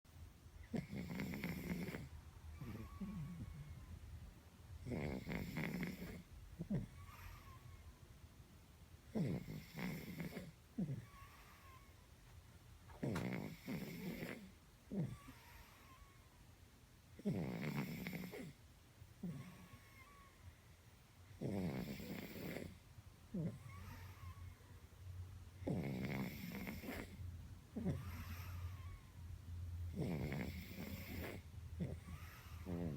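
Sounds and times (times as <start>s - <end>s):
cat snoring: 0.6s - 3.9s, 4.8s - 7.8s, 9.1s - 12.0s, 12.9s - 16.2s, 17.2s - 18.6s, 19.2s - 20.3s, 21.3s - 24.5s, 25.6s - 27.2s, 27.8s - 29.1s, 29.9s - 32.9s.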